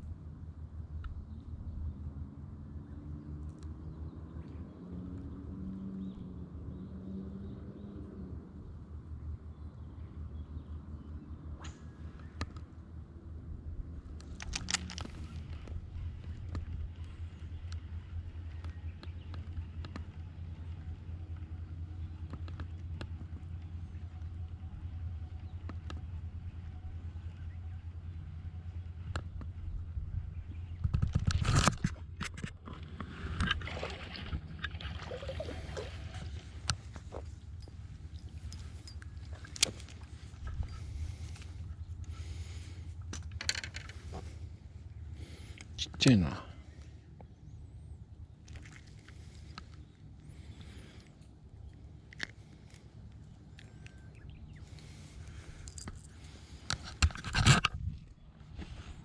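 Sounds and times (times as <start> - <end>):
low hum: 0.0 - 59.0
low steady rumble: 0.0 - 59.0
sharp clicks and scrapes: 14.2 - 16.7, 30.8 - 33.7, 54.8 - 59.0
water splashing and sloshing: 31.1 - 41.6, 48.3 - 53.9.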